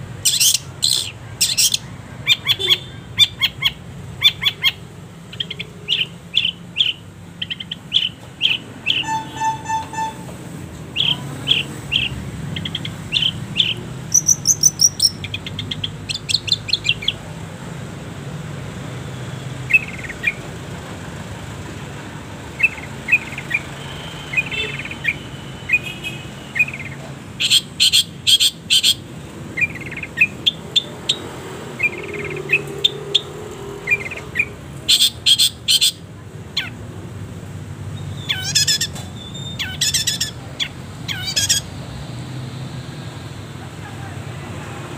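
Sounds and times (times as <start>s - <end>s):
bird chirping and trilling: 0.2s - 10.3s, 10.9s - 17.2s, 19.4s - 20.5s, 22.5s - 36.8s, 37.9s - 41.8s.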